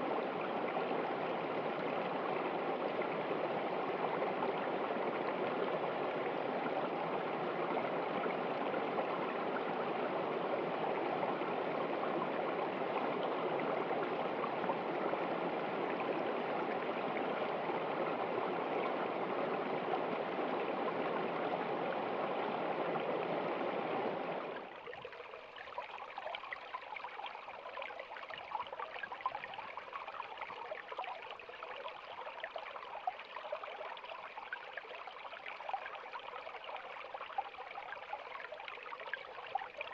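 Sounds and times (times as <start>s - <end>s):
water trickling and splashing: 19.7s - 39.9s.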